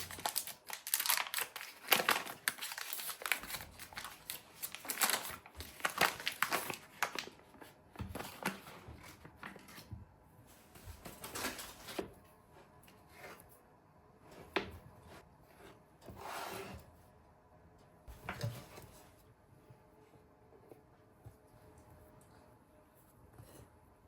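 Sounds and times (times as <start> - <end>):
rustling scrape: 15.0 - 17.0.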